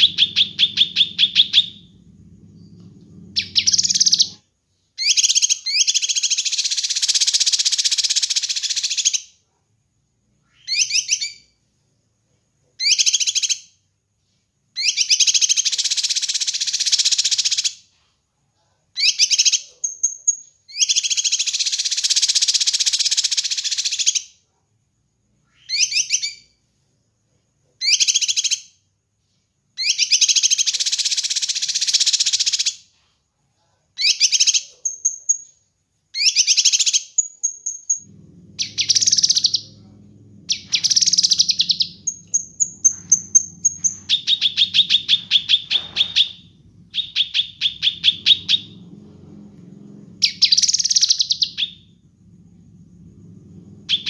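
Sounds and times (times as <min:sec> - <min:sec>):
bird chattering and singing: 0:00.0 - 0:01.9, 0:03.3 - 0:04.4, 0:36.2 - 0:48.8, 0:50.2 - 0:51.9.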